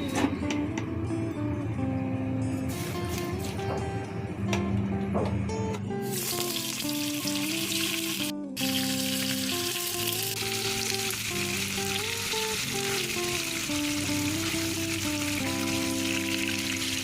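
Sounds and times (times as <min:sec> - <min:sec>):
background music: 0:00.0 - 0:17.0
food sizzling in oil: 0:06.0 - 0:17.0.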